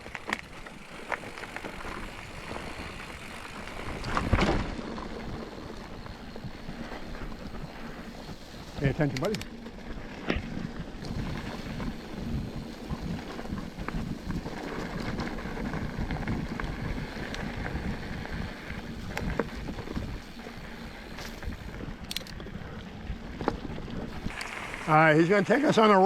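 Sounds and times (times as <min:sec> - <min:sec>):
bike clicks and knocks: 0:00.0 - 0:12.0, 0:18.4 - 0:24.6
wind buffeting microphone: 0:00.8 - 0:26.0.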